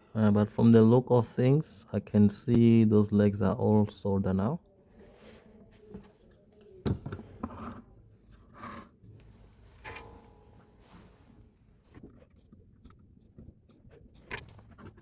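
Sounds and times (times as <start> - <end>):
tools knocking and scraping on workbench: 6.9 - 8.9.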